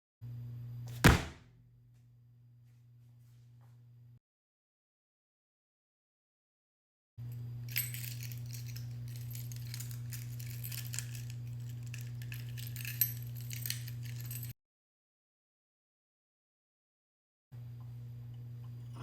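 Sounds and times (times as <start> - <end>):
steady electrical hum: 7.3 - 14.5
small metal objects jingling: 7.7 - 14.5.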